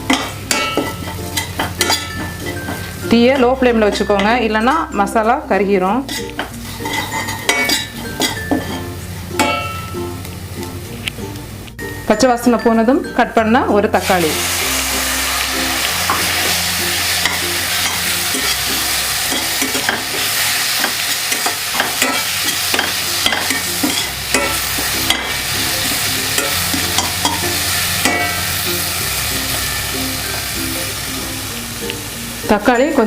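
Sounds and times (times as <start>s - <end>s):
food sizzling in hot oil: 0.0s - 12.0s, 13.9s - 33.0s
spatula scraping a pan: 6.1s - 9.8s, 14.0s - 30.5s.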